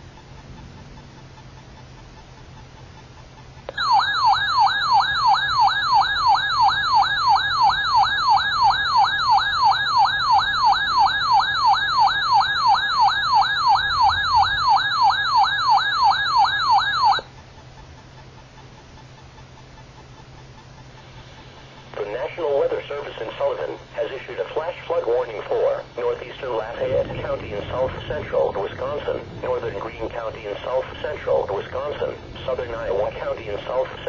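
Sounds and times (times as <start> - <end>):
warbling electronic alert tone: 3.7 - 17.3, 26.6 - 34.0.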